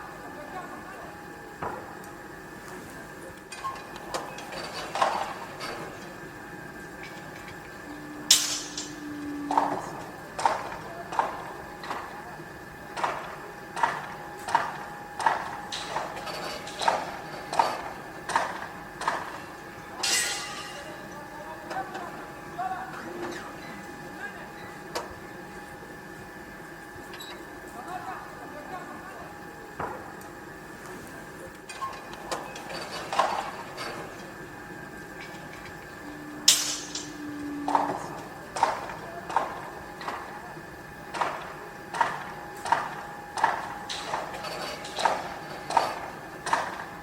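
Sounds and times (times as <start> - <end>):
faint steady hum: 0.0 - 47.0
metallic clanks and knocks: 8.3 - 9.8, 36.5 - 37.2.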